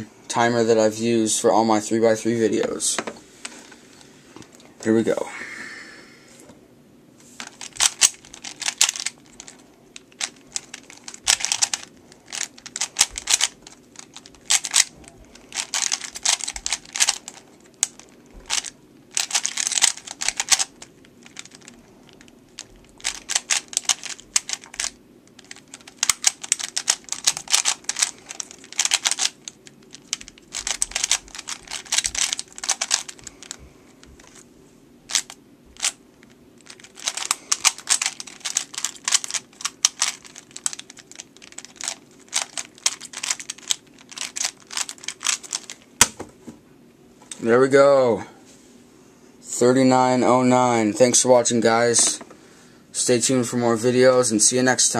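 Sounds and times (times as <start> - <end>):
puzzle cube plastic clicking: 7.4 - 14.9, 15.5 - 33.6, 36.6 - 45.8.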